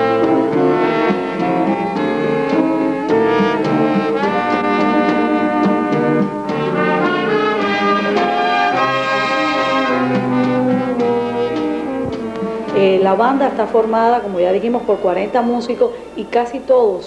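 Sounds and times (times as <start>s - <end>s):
concert band playing chords: 0.0s - 12.8s.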